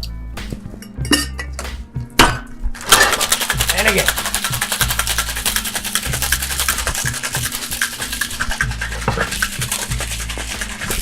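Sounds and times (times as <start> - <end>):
cocktail shaker rattling: 2.8 - 11.0.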